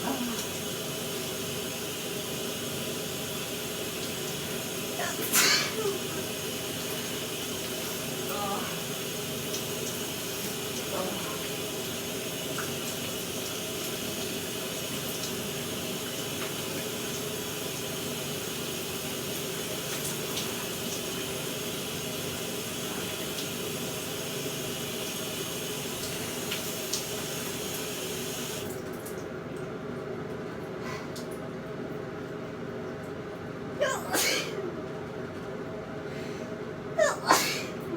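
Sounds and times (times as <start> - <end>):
shower water running: 0.0 - 29.7.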